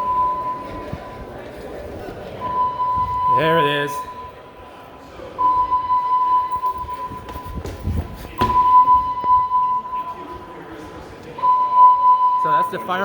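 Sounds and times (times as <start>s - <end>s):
fire alarm tone: 0.0s - 1.3s, 2.4s - 4.4s, 5.4s - 7.8s, 8.4s - 10.6s, 11.4s - 13.0s.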